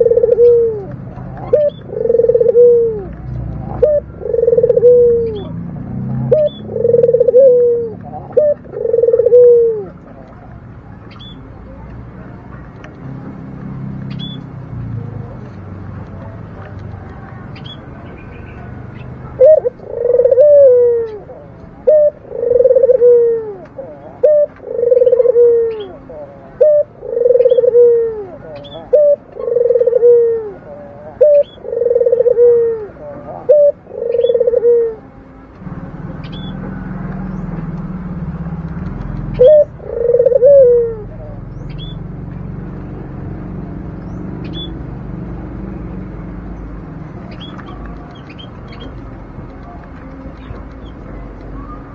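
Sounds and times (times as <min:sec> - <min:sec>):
dove cooing: 0:00.0 - 0:10.6, 0:18.6 - 0:35.3, 0:38.8 - 0:42.2.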